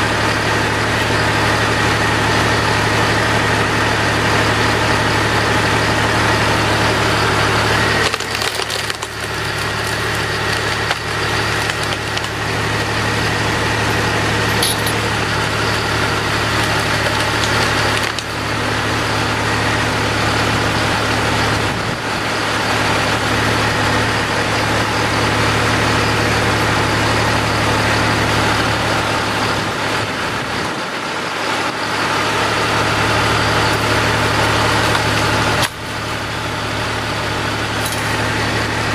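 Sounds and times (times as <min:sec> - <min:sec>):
tractor engine running: 0:00.0 - 0:38.9
wood cracking: 0:07.7 - 0:13.2, 0:15.8 - 0:18.4.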